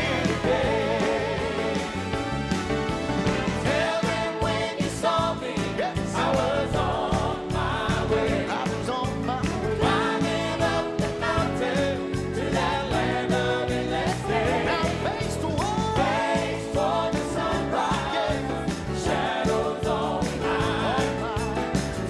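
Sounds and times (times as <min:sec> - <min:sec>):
band accompaniment: 0:00.0 - 0:22.0
gospel choir singing: 0:00.0 - 0:22.0
steady drum beat: 0:00.0 - 0:22.0.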